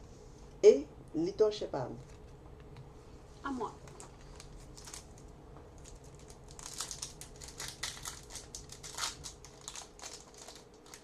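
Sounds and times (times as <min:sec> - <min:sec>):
card pack wrapper crinkling: 0:03.9 - 0:11.0.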